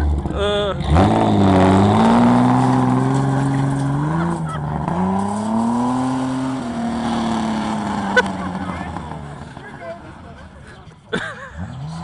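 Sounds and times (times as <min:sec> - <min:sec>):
race car engine accelerating: 0:00.0 - 0:10.6, 0:11.4 - 0:12.0.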